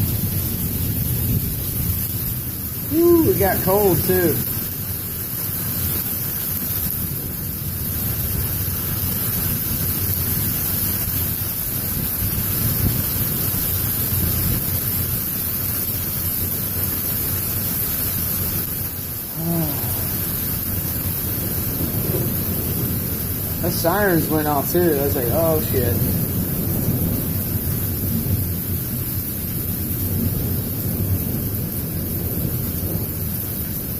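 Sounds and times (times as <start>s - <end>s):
storm wind buffeting microphone: 19.4s - 33.8s.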